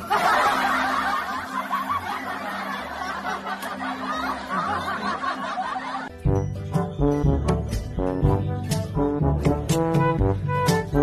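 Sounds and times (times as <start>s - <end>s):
crowd laughing: 0.0s - 6.2s
background music: 0.0s - 11.0s.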